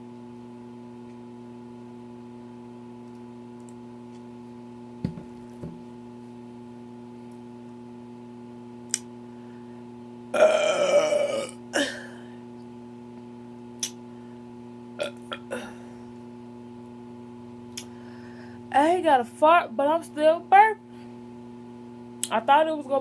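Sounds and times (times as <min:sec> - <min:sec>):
steady low hum: 0:00.0 - 0:23.0
woman burping: 0:10.3 - 0:12.3, 0:15.0 - 0:16.0.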